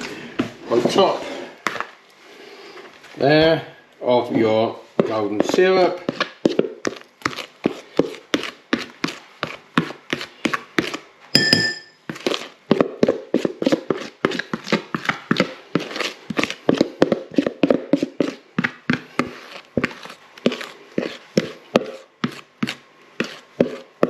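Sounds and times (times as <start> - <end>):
spoon scraping mixing bowl: 5.0 - 11.1, 12.0 - 24.0
clink: 11.4 - 12.0.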